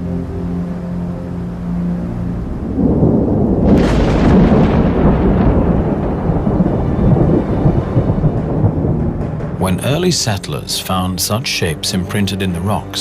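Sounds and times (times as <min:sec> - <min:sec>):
thunder rumbling and cracking: 0:02.5 - 0:11.2.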